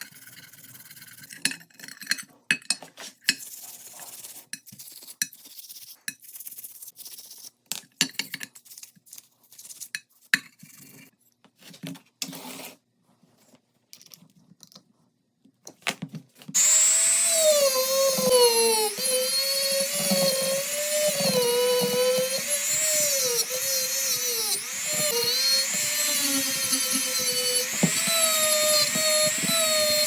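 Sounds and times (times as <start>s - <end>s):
small electric power tool running: 16.6s - 30.0s.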